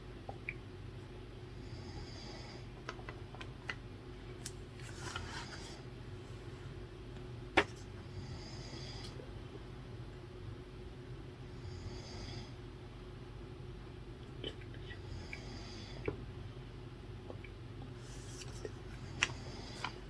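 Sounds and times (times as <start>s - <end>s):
low room hum: 0.0s - 20.0s
person breathing heavily in sleep: 8.0s - 9.2s, 11.5s - 12.6s, 15.0s - 16.0s, 19.0s - 20.0s.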